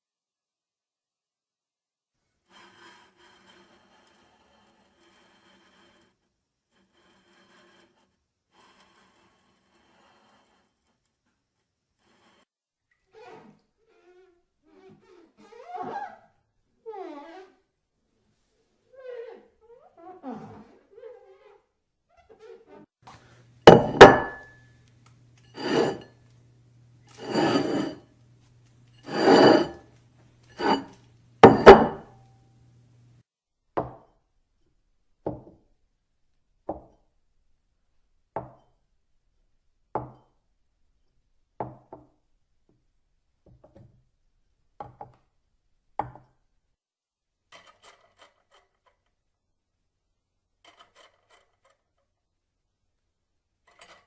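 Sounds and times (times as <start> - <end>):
knocks and clinks on hard objects: 23.7 - 24.6, 30.6 - 32.1.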